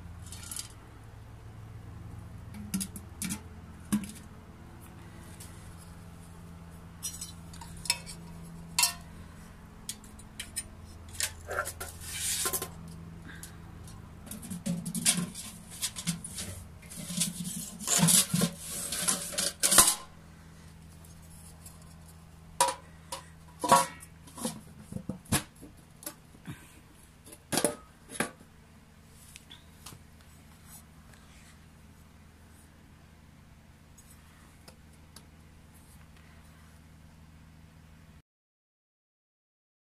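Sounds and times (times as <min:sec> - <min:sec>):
faint steady hum: 0:00.0 - 0:38.2
metal clinking and scraping: 0:00.2 - 0:00.8, 0:07.0 - 0:09.1, 0:09.8 - 0:13.0, 0:13.9 - 0:20.1, 0:21.0 - 0:24.7.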